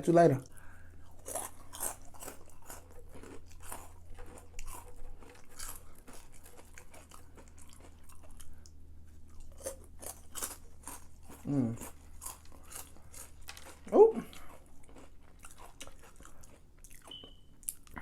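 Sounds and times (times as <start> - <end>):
person chewing crunchy food: 0.4 - 18.0.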